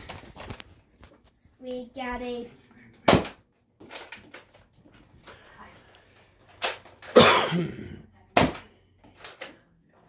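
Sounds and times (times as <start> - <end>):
rough cough-like burst: 7.2 - 7.8.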